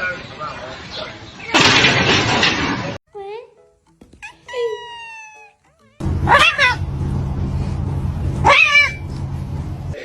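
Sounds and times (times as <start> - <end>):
cat yowling: 4.2 - 6.9, 8.4 - 9.1
steady low hum: 6.0 - 10.0.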